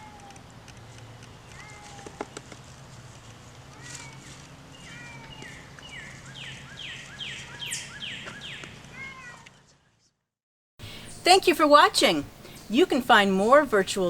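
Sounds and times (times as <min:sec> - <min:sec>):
low steady hum: 0:10.8 - 0:14.0.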